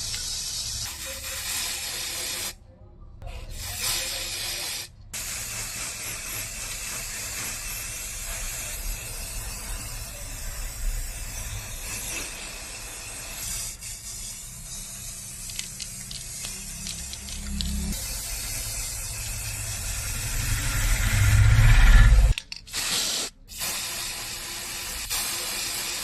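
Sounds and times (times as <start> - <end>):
spraying hiss: 0.0 - 2.6, 3.6 - 21.8.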